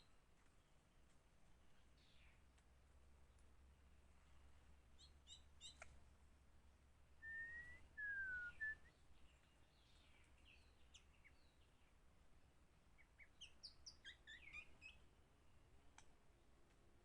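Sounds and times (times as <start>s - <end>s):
bird chirping: 5.0s - 5.9s, 7.2s - 12.0s, 13.0s - 15.1s
bird whistling notes: 7.2s - 9.0s.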